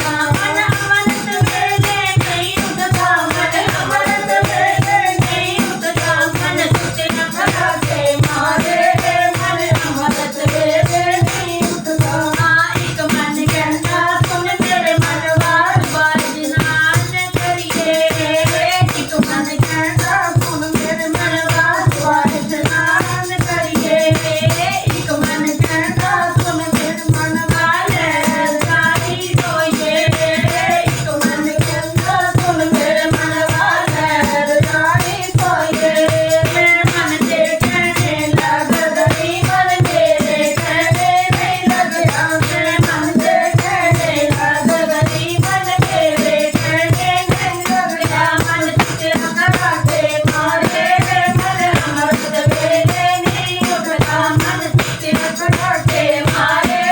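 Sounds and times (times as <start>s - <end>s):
jingling hand percussion: 0.0s - 56.9s
steady drum beat: 0.0s - 56.9s.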